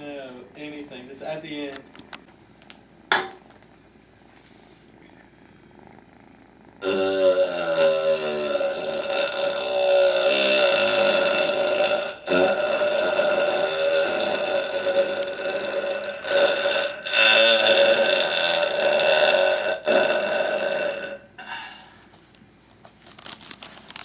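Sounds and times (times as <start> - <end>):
man belching: 6.8 - 21.6.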